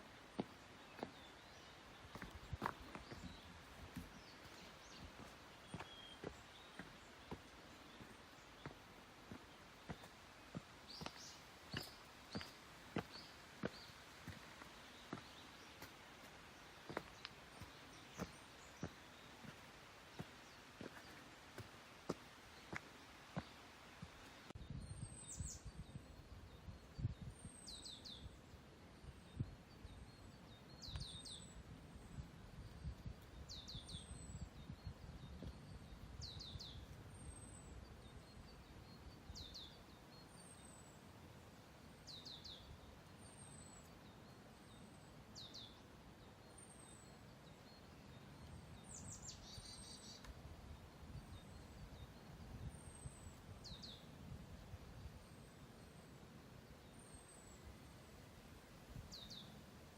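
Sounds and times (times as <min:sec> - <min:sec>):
songbird calling: 0:00.0 - 0:16.0.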